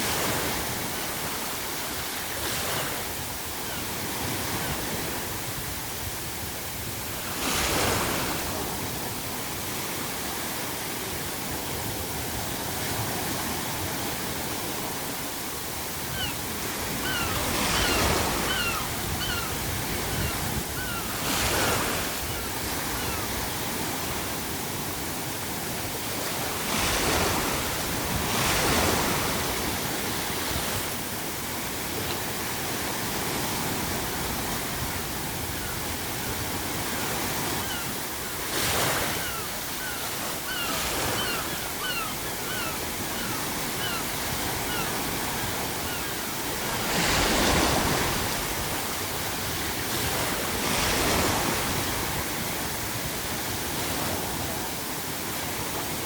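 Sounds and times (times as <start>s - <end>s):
ocean waves crashing: 0.0s - 56.0s
seagull calls: 16.1s - 23.3s, 37.4s - 48.0s.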